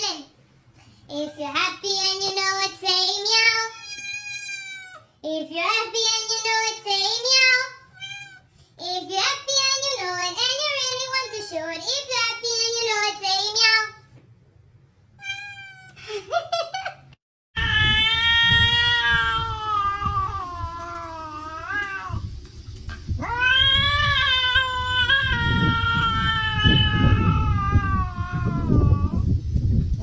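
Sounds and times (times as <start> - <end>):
cat meowing: 3.5 - 5.1, 7.8 - 8.5, 11.0 - 11.8, 15.2 - 16.0, 17.6 - 22.2, 23.2 - 29.2.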